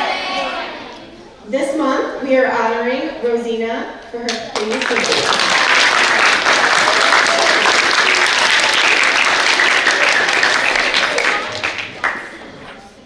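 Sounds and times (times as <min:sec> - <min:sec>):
audience applauding: 0:04.3 - 0:12.5.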